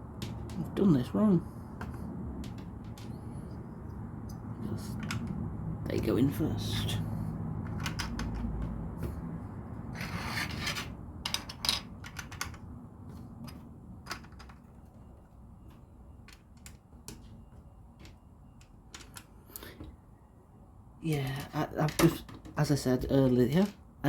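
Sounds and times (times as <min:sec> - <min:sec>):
plastic bricks clicking: 0:05.0 - 0:05.4, 0:07.7 - 0:08.6.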